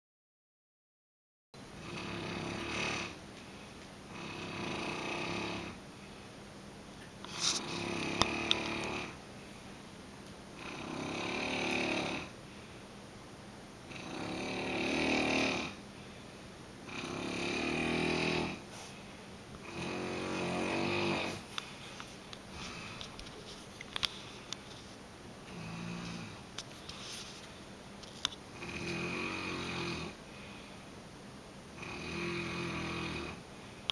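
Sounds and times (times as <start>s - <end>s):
loud rasping snores: 1.8s - 3.2s, 4.1s - 5.8s, 7.3s - 9.2s, 10.6s - 12.4s, 13.9s - 15.8s, 16.8s - 18.6s, 19.6s - 21.5s, 25.5s - 26.4s, 28.6s - 30.2s, 31.8s - 33.4s.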